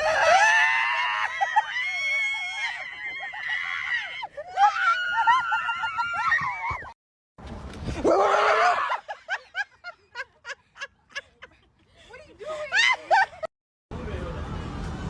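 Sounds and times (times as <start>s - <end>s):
person screaming in fright: 8.0s - 9.0s.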